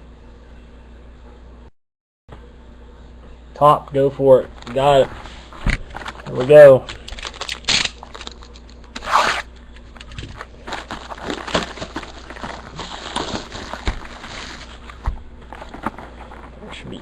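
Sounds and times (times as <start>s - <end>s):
card box tearing and crinkling: 7.2s - 8.4s, 9.0s - 9.5s, 10.6s - 16.5s.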